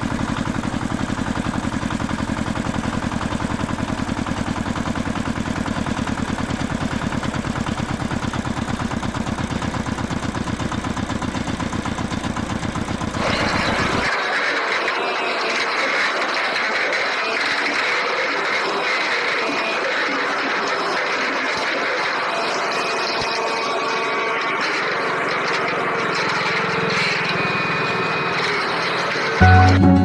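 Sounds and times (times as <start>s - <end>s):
engine idling: 0.0s - 14.1s.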